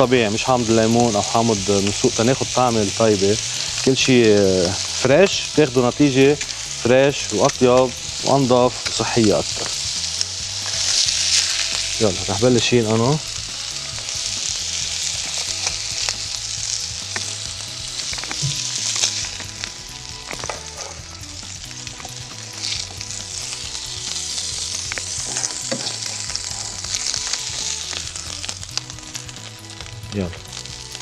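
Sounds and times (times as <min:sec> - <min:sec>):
fish sizzling in a frying pan: 0:00.0 - 0:31.0
spatula scraping a pan: 0:21.9 - 0:28.2.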